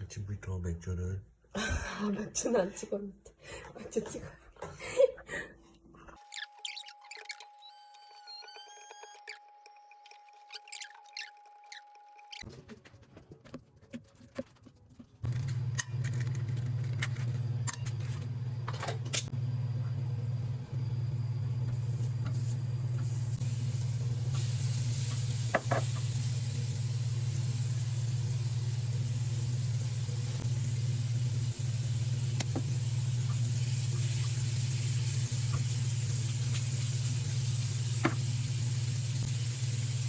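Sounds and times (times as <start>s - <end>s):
hiss: 21.7s - 40.0s.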